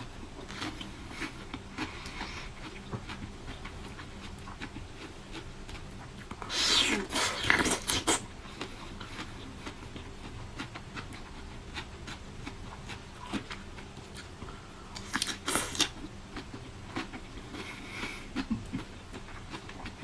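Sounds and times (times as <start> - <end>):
soft chewing: 0.0 - 20.0.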